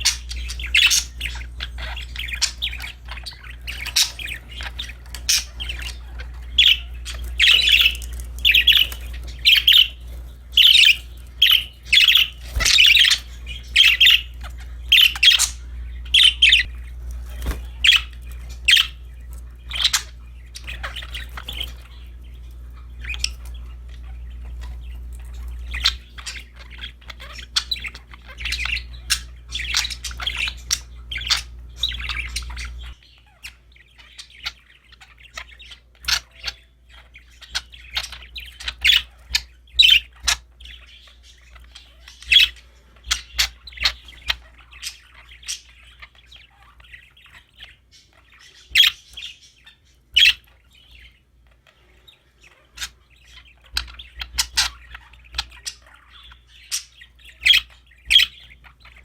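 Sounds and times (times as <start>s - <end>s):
budgerigars chirping: 0.0s - 59.0s
steady low hum: 0.0s - 59.0s.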